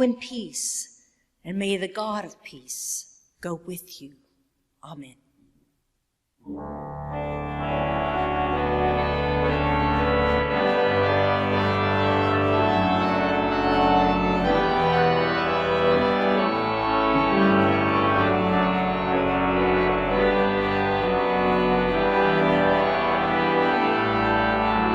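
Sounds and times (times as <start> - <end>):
organ chords: 6.4 - 24.9
organ pedal bass: 6.5 - 24.9.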